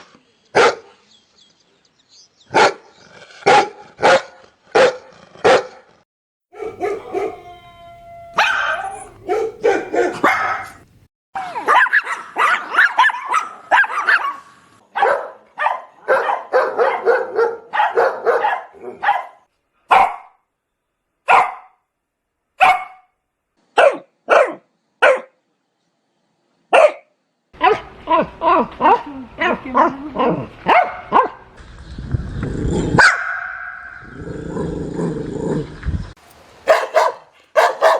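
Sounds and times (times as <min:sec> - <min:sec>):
dogs barking: 0:00.6 - 0:01.0, 0:02.5 - 0:05.9, 0:06.5 - 0:10.9, 0:11.5 - 0:20.4, 0:21.3 - 0:21.7, 0:22.6 - 0:23.0, 0:23.8 - 0:25.3, 0:26.7 - 0:27.0, 0:30.6 - 0:31.5, 0:33.0 - 0:34.0, 0:36.7 - 0:37.9.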